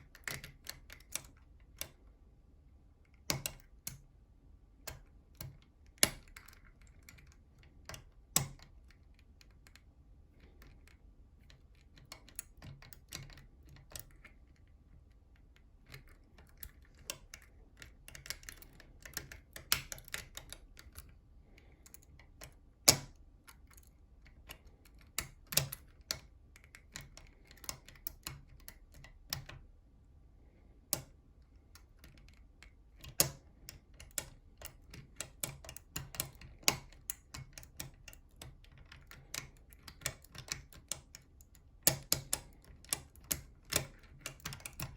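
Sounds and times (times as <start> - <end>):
lock picking metallic clicks: 0.0 - 2.0, 15.4 - 21.2, 21.8 - 29.6, 30.9 - 44.9.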